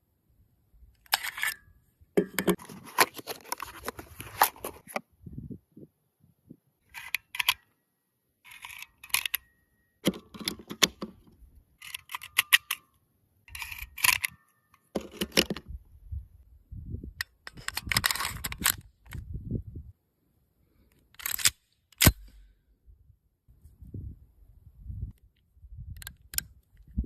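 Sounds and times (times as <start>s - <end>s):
metallic clicks of pistol handling: 6.9s - 7.8s, 8.5s - 9.5s, 11.8s - 15.5s, 20.9s - 22.5s, 25.3s - 26.9s.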